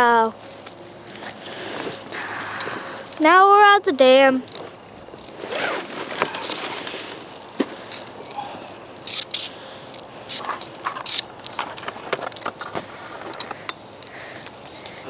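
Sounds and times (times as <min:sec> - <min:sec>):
handling noise clicks and rustles: 0:04.4 - 0:08.2, 0:09.0 - 0:15.0.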